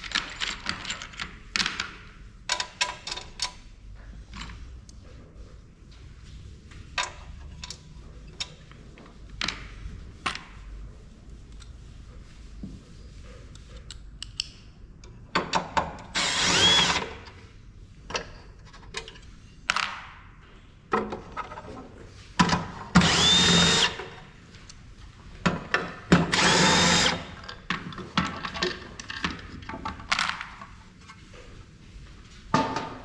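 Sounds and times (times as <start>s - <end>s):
clicks and clatter of parts: 0.0s - 5.0s, 13.6s - 16.1s, 18.1s - 20.2s, 25.4s - 31.2s
cordless drill whine: 16.2s - 17.0s, 23.0s - 24.0s, 26.3s - 27.3s.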